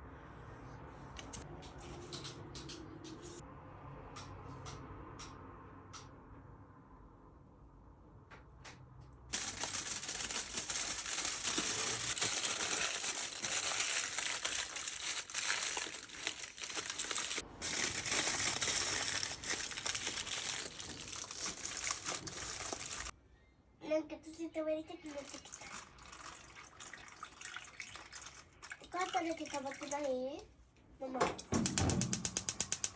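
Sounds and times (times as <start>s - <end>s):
aluminium foil crinkling: 9.3s - 23.1s.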